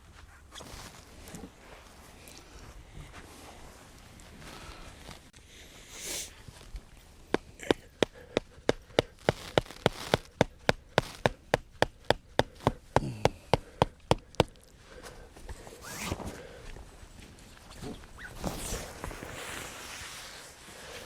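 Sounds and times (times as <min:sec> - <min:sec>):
hammer striking metal tent stake: 0:07.6 - 0:14.5.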